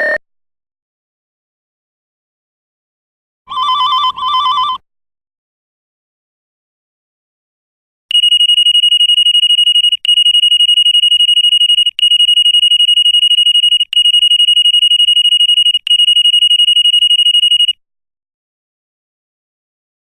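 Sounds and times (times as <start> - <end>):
electronic ringer pulsing beep: 8.1 - 17.8.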